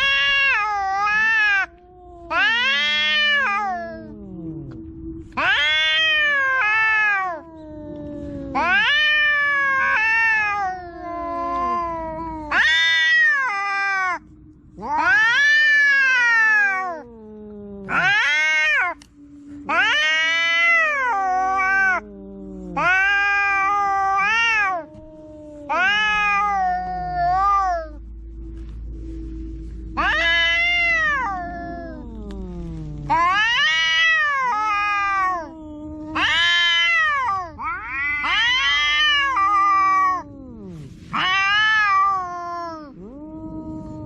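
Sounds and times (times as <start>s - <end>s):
cats yowling: 0.0s - 44.0s
faint low steady tone: 3.0s - 8.8s, 18.9s - 19.9s, 24.8s - 33.2s.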